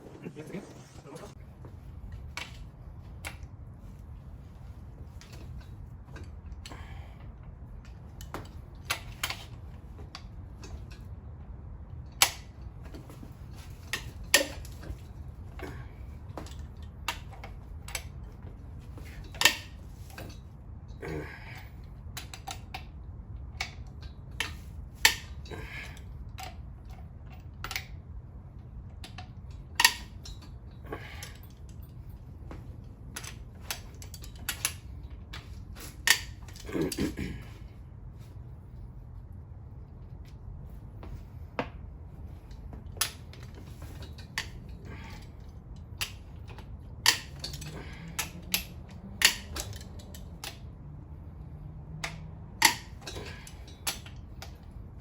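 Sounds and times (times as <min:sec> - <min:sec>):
steady low hum: 0:00.0 - 0:55.0
hand tools clinking on engine parts: 0:46.0 - 0:50.6, 0:52.0 - 0:54.6.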